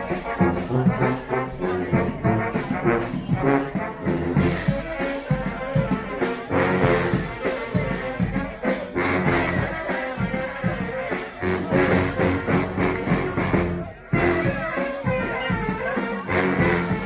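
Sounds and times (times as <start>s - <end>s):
brass band playing: 0.0s - 17.0s.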